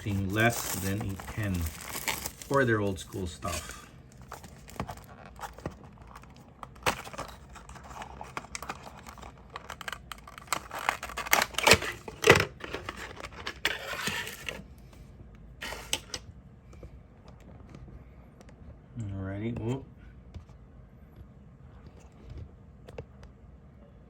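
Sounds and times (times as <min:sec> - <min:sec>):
packaging crinkling and rustling: 0:00.0 - 0:14.6.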